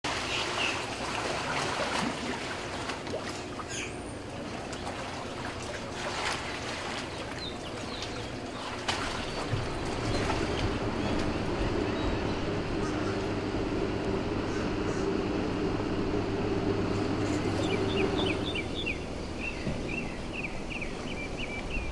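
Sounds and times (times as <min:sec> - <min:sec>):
boat motor rumble: 0:00.0 - 0:21.9
water washing: 0:00.0 - 0:21.9
bird chirps: 0:17.3 - 0:21.9.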